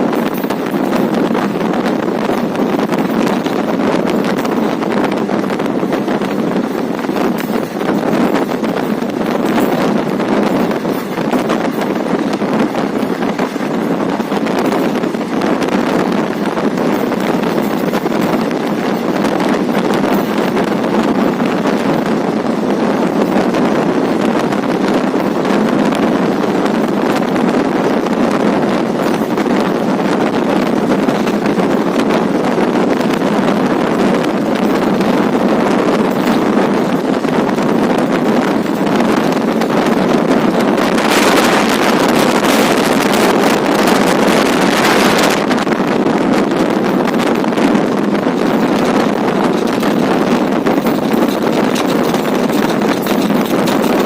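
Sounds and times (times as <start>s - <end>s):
train wheels rumbling on rails: 0.0s - 54.0s
wind rushing past: 0.0s - 54.0s.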